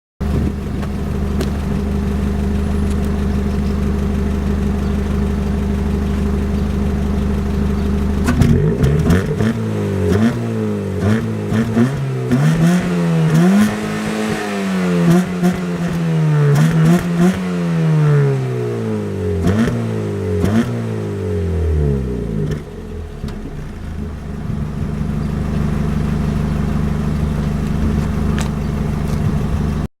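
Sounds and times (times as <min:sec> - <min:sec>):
car engine idling and revving: 0:00.2 - 0:29.9.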